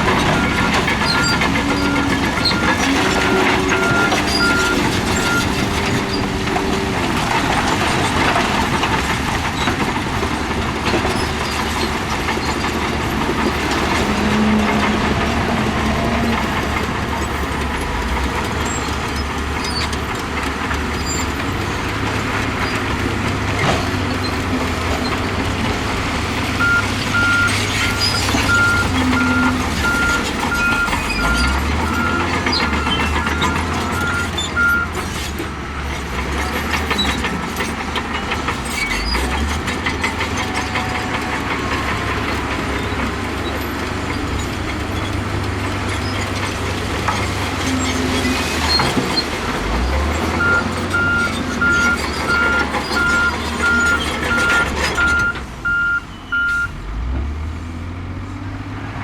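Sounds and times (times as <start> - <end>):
diesel machinery engine under load: 0.0 - 59.0
reversing alarm beeping: 0.3 - 5.6, 26.6 - 35.0, 50.4 - 56.8.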